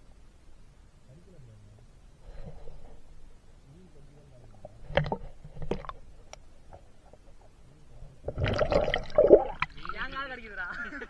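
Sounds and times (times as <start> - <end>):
water splashing in rock pool: 8.2 - 11.0.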